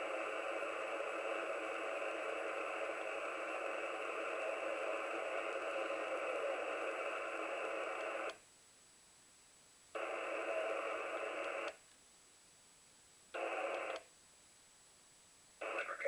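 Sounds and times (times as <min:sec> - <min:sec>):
radio band noise hiss: 0:00.0 - 0:08.4, 0:09.9 - 0:11.8, 0:13.3 - 0:14.1, 0:15.6 - 0:16.0.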